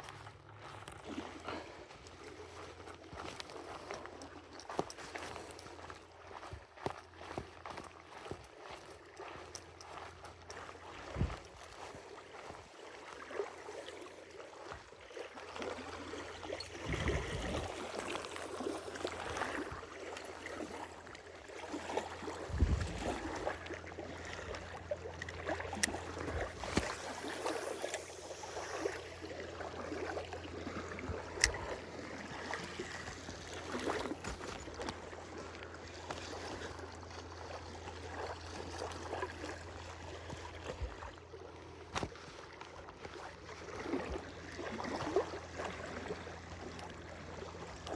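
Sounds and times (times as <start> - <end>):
water lapping against boat hull: 0.0 - 47.9
low steady hum: 15.7 - 41.9.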